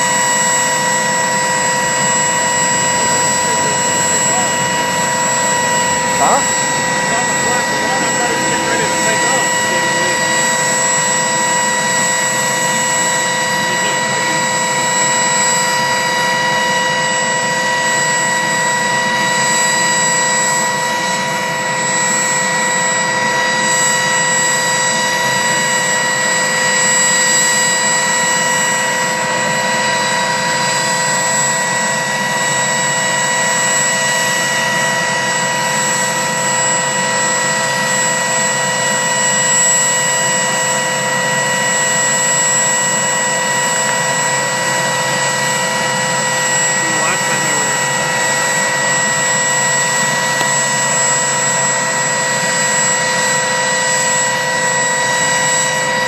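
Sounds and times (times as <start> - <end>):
helicopter turbine engines whining: 0.0 - 56.0.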